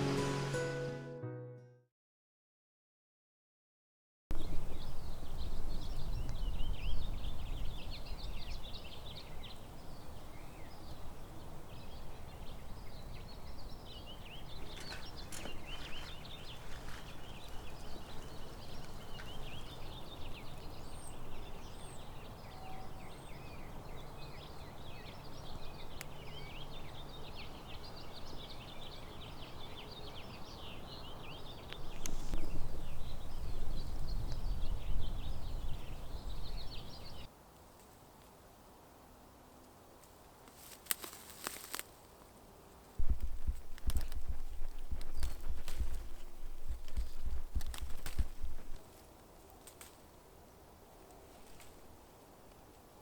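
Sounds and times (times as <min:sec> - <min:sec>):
small birds chirping: 0:04.3 - 0:37.3, 0:43.0 - 0:49.7
wind rumble on microphone: 0:04.3 - 0:37.3, 0:43.0 - 0:48.8.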